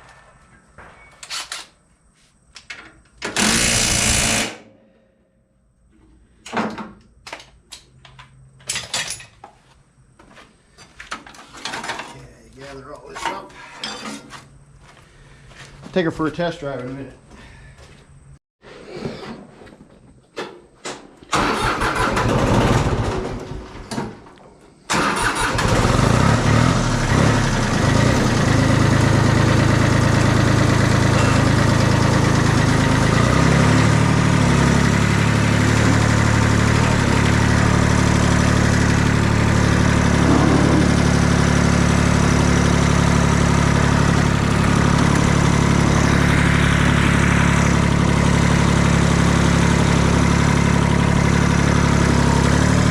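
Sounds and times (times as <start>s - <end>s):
tractor engine starting and running: 2.6s - 4.6s, 20.4s - 52.9s.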